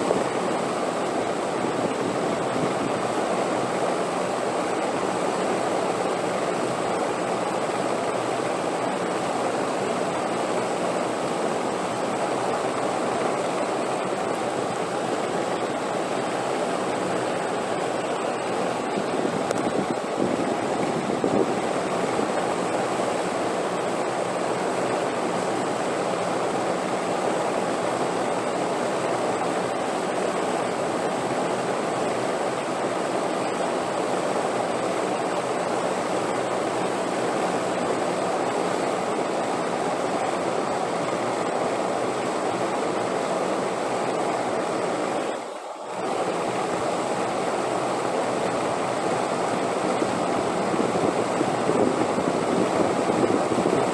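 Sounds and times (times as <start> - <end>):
steady wind rushing: 18.4 - 22.5, 49.3 - 53.9.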